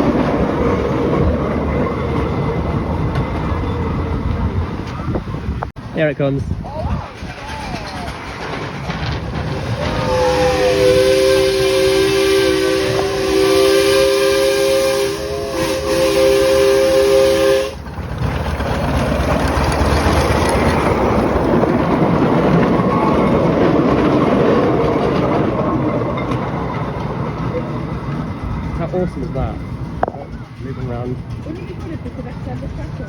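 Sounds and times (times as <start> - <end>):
train running noise: 0.0 - 33.0
steam locomotive chime whistle: 9.9 - 17.8.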